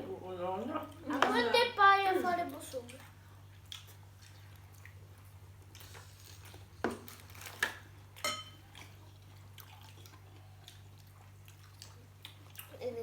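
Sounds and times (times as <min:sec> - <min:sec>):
cutlery and dishes clinking: 0:08.2 - 0:08.6.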